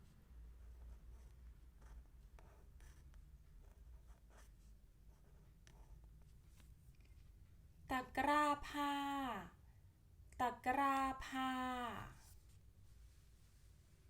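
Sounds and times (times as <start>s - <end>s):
pen scratching on paper: 0.6s - 6.3s.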